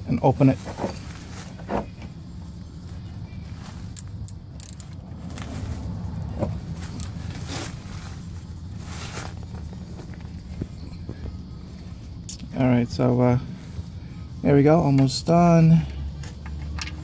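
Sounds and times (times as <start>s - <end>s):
steady low rumble: 0.0s - 16.5s
ratchet metal clicks: 3.9s - 5.0s, 16.1s - 17.0s.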